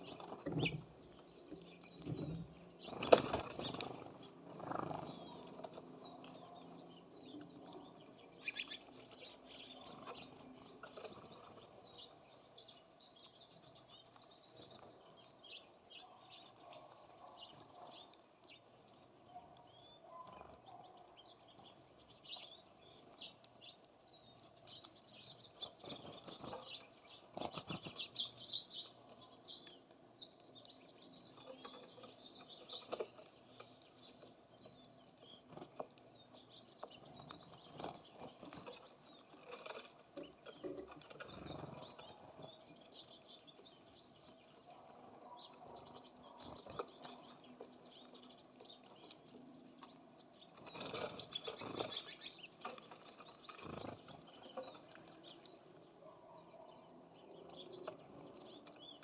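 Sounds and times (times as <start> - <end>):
songbirds chirping: 0.0 - 59.0
wing flutters: 2.8 - 5.7.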